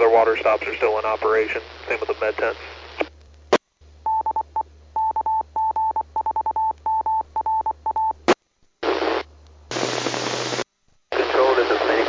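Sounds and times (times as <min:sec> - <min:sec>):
radio static bursts: 0:00.0 - 0:03.1, 0:08.8 - 0:12.0
morse code beeps: 0:04.1 - 0:08.2.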